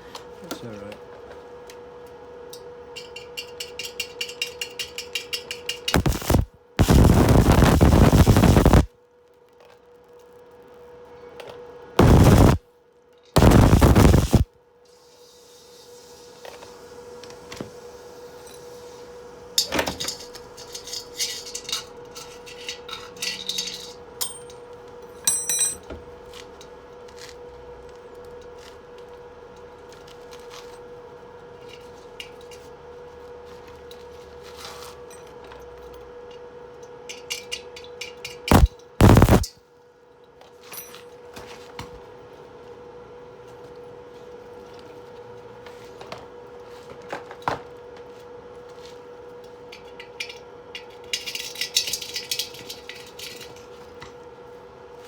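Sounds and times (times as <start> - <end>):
arc welding crackle: 6.0 - 8.9, 12.0 - 12.6, 13.4 - 14.4, 38.5 - 39.5
steady hum: 6.0 - 8.9, 12.0 - 12.6, 13.4 - 14.4, 38.5 - 39.4
metallic clinks and taps: 25.2 - 25.8.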